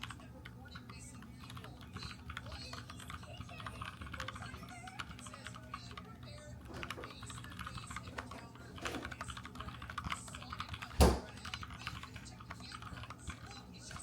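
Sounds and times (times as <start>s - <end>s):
keyboard key clicks: 6.7s - 12.0s.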